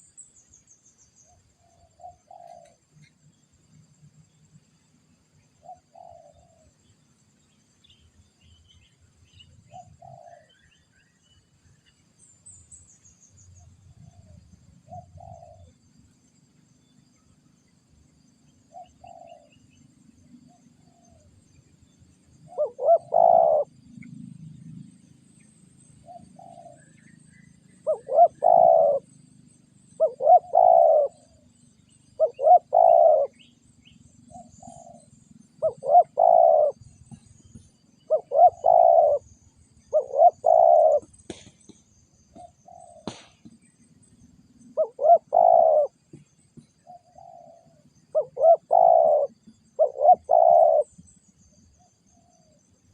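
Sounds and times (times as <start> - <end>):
dove cooing: 1.7 - 2.8, 5.6 - 6.7, 9.7 - 10.6, 14.0 - 15.8, 18.7 - 19.6, 22.4 - 24.9, 26.0 - 29.1, 29.9 - 31.5, 32.2 - 33.5, 34.2 - 41.5, 42.4 - 43.3, 44.7 - 46.2, 46.8 - 51.0.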